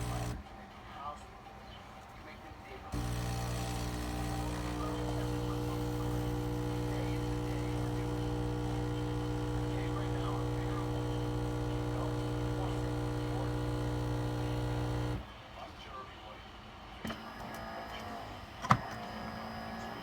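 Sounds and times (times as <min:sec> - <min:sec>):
espresso machine pump buzzing: 0:00.0 - 0:00.4, 0:02.9 - 0:15.2, 0:17.1 - 0:20.0.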